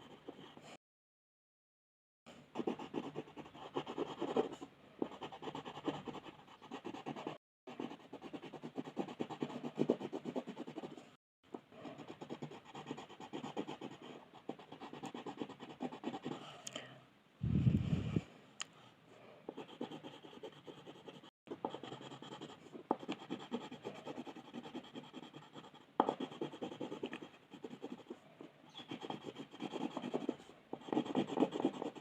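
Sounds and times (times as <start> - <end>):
colouring strokes scratching on paper: 19.5 - 32.0.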